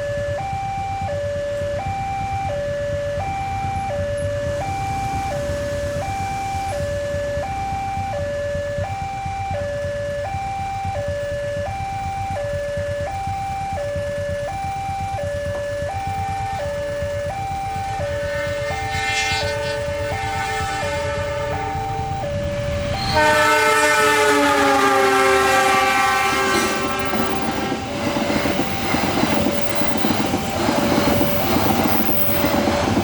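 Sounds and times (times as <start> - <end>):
two-tone level crossing alarm: 0.0 - 33.0
low rumble: 17.2 - 24.4.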